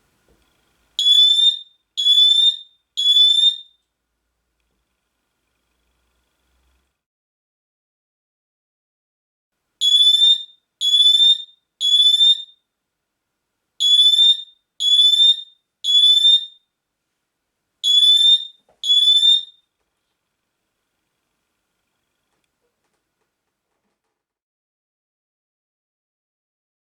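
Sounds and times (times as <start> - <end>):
smoke alarm beeping: 1.0 - 3.8, 9.8 - 12.6, 13.8 - 16.6, 17.8 - 19.7.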